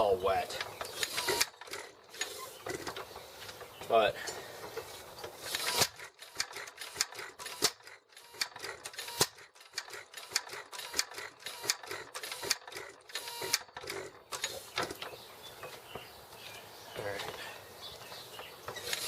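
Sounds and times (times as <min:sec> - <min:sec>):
engine clicks and clacks: 0:05.2 - 0:15.1.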